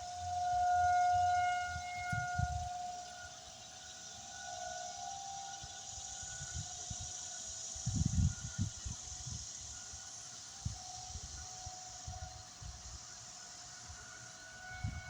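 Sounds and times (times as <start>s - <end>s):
distant warning siren: 0.0s - 15.0s
wind buffeting microphone: 1.7s - 2.8s, 7.8s - 9.5s.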